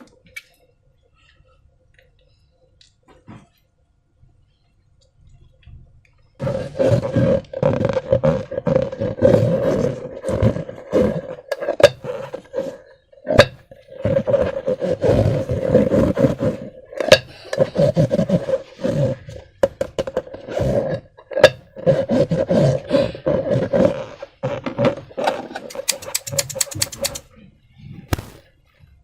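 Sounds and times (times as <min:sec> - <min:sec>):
rubber rubbing: 0:06.4 - 0:27.2, 0:28.1 - 0:28.5
sharp snapping clicks: 0:25.7 - 0:27.2.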